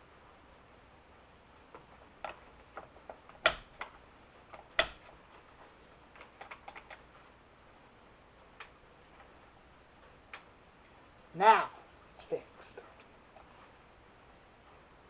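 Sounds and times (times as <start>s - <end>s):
light clicks and taps of hand work: 1.7s - 7.1s.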